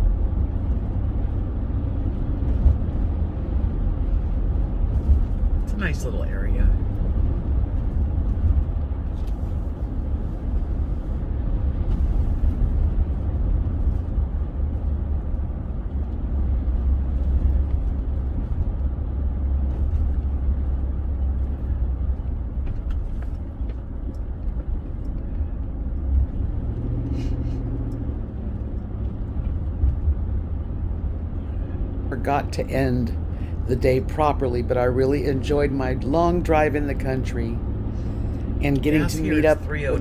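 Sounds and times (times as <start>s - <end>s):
car engine rumble: 0.0s - 40.0s
tyres on the road: 0.0s - 40.0s.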